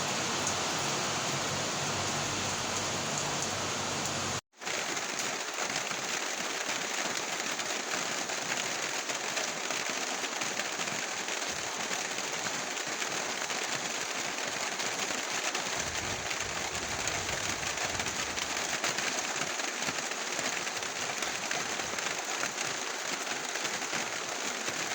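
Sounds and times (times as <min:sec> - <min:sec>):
heavy rain: 0:00.0 - 0:24.9
low rumble: 0:15.7 - 0:18.8.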